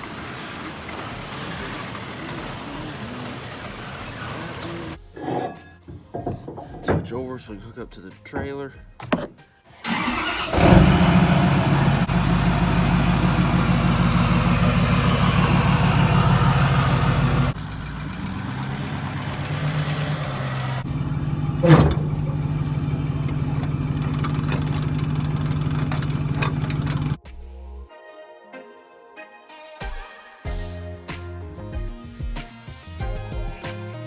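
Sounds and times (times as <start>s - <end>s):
diesel engine starting and idling: 0.0s - 5.0s, 9.8s - 27.2s
sharp clunk: 21.3s - 27.2s.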